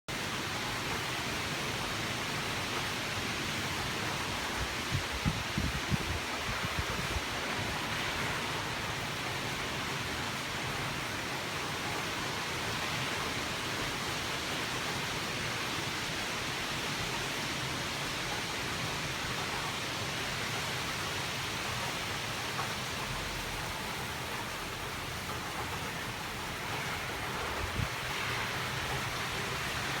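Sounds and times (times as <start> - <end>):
hurricane wind and rain: 0.1 - 30.0
wind buffeting microphone: 4.2 - 8.0, 27.2 - 28.2.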